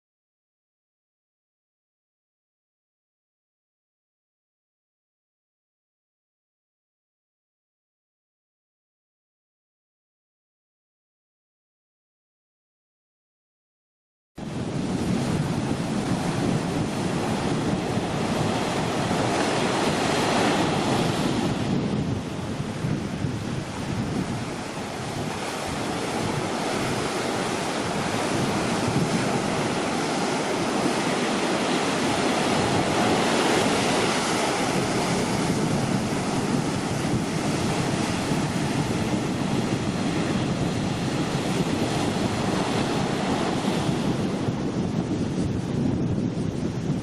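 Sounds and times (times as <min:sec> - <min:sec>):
heavy surf breaking: 0:14.4 - 0:47.0
wind on microphone: 0:14.4 - 0:47.0.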